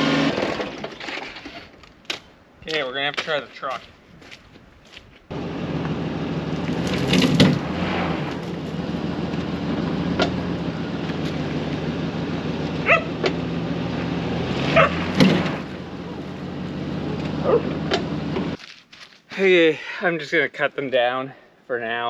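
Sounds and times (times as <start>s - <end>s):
pickup truck engine running: 5.3s - 18.6s.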